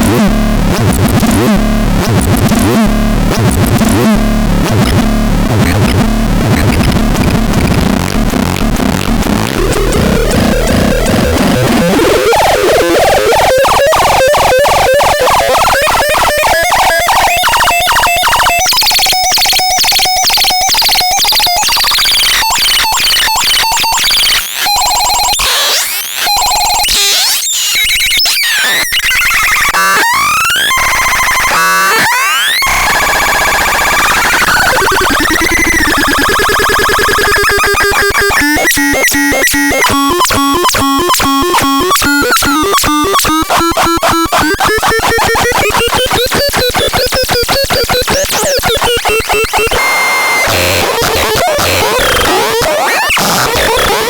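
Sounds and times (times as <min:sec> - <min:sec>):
sliding synthesizer tones: 0:00.0 - 0:21.6, 0:29.0 - 0:54.0
harsh synthesizer noise: 0:00.0 - 0:54.0
rapid pulsing clicks: 0:03.4 - 0:13.4.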